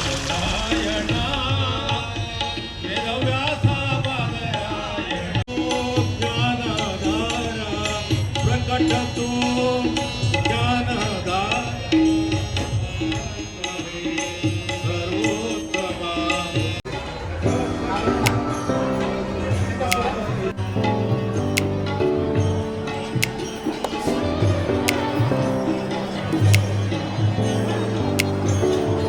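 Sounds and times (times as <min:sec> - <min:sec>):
devotional singing: 0:14.8 - 0:29.0.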